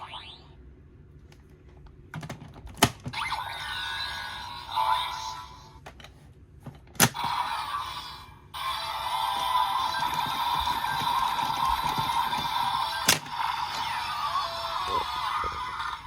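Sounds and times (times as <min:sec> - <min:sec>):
toy electronic sound effects: 0:00.0 - 0:00.6, 0:03.1 - 0:05.8, 0:07.0 - 0:16.0.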